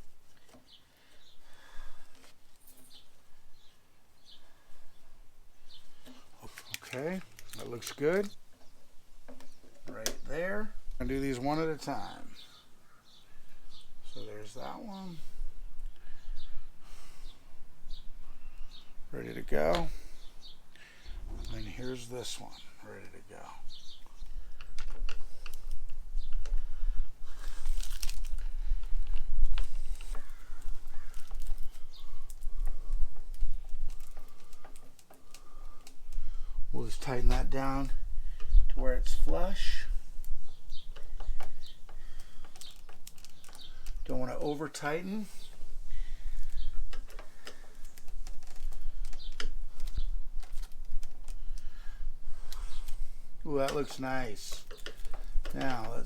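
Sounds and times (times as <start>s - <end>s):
steady low rumble: 21.0s - 22.9s.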